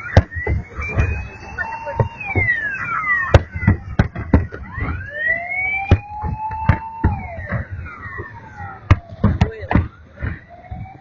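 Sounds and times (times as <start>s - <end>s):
whistling firework shells: 0.0s - 5.0s.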